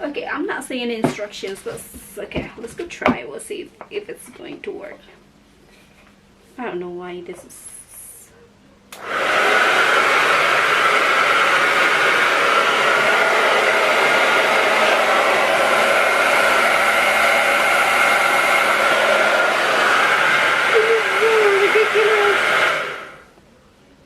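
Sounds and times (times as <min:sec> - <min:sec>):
hair dryer switch click: 0:08.9 - 0:09.4
hair dryer blowing air: 0:09.0 - 0:23.3.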